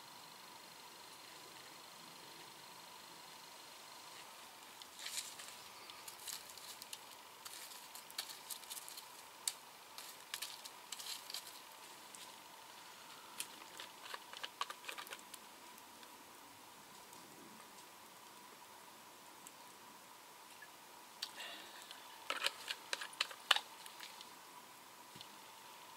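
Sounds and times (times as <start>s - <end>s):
faint hiss: 0.0s - 25.9s
campfire crackling and popping: 4.6s - 12.4s, 13.4s - 16.2s, 21.2s - 24.3s.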